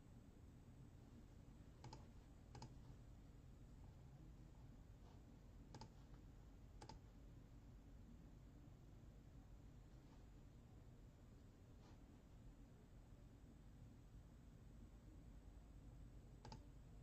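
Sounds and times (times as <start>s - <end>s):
low room hum: 0.0s - 17.0s
faint sharp clicks: 1.8s - 2.8s, 16.4s - 16.7s.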